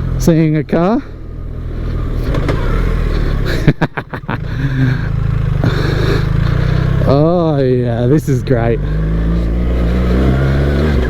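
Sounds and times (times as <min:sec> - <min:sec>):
motorcycle engine pulling: 0:00.0 - 0:11.0
engine knocks: 0:01.5 - 0:07.2.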